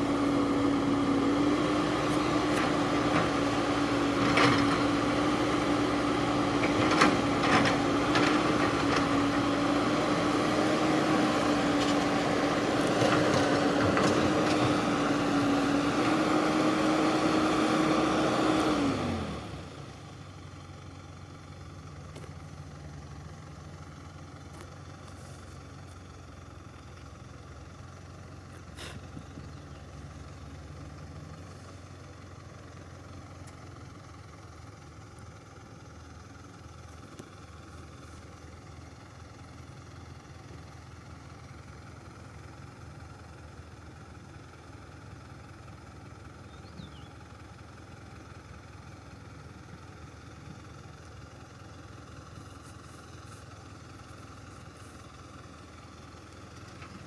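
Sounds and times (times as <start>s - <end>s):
engine running at high speed: 0.0s - 20.2s.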